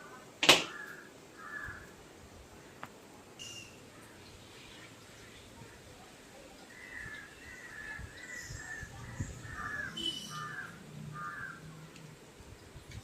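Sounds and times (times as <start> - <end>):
crows cawing: 0.0 - 2.0, 9.4 - 11.8.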